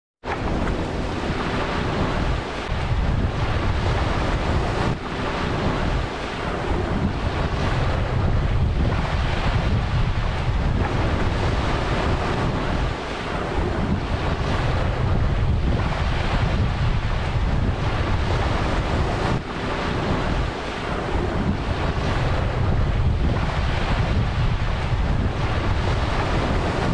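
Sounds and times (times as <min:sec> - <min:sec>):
ocean waves breaking: 0:00.2 - 0:26.9
wind buffeting microphone: 0:00.2 - 0:26.9.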